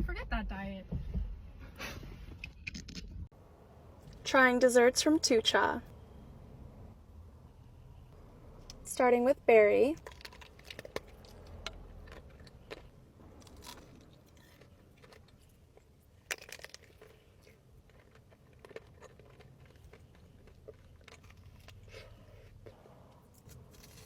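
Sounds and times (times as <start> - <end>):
crunching and chewing: 10.0 - 24.0.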